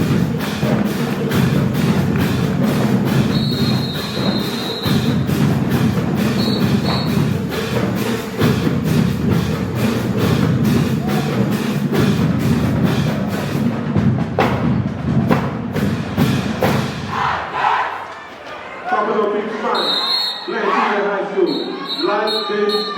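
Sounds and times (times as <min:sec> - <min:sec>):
dance music with percussive beat: 0:00.0 - 0:13.7.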